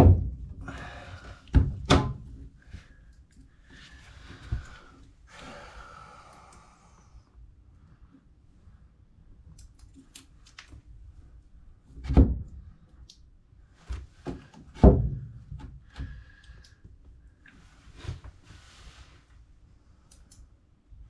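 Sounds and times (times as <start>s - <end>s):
heavy thunks: 0.0s - 2.4s, 14.3s - 16.2s.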